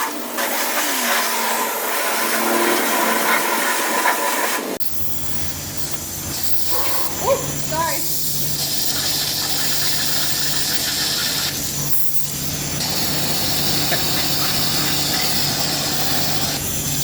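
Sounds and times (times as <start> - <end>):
pressure washer spraying water: 0.0 - 17.0.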